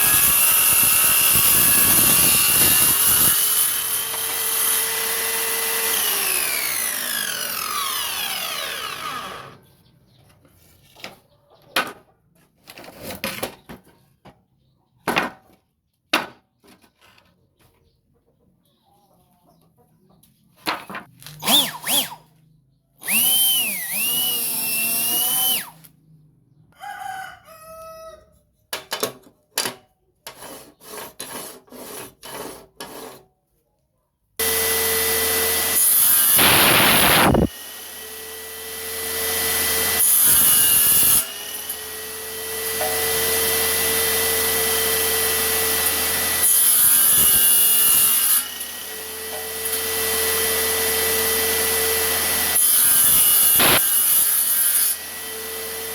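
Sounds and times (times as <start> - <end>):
table saw running: 0.0 - 9.6, 21.4 - 22.2, 23.0 - 25.7, 34.4 - 55.9
saw blade cutting wood: 0.0 - 9.7, 21.2 - 22.3, 23.0 - 25.9, 30.3 - 33.2, 34.4 - 55.9
rooster crowing: 26.7 - 28.4.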